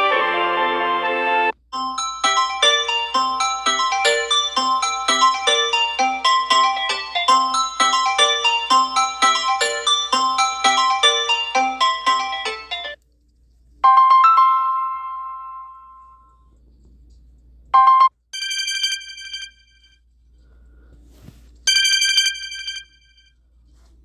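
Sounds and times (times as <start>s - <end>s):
chime ringing: 1.8s - 13.0s, 18.4s - 19.8s, 21.7s - 23.2s
mallet-like melody: 1.8s - 13.0s
high repeated-note chirp: 18.4s - 19.9s, 21.7s - 23.2s.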